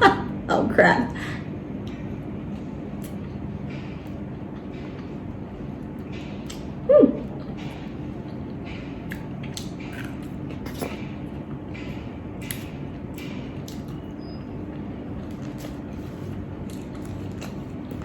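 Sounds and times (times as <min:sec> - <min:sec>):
steady low hum: 0:00.0 - 0:18.0
person chewing crispy food: 0:07.4 - 0:14.1, 0:15.1 - 0:18.0.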